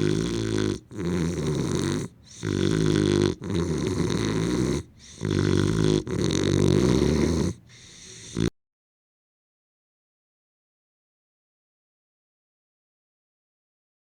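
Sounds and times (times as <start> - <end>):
dog snoring: 0.0 - 8.5.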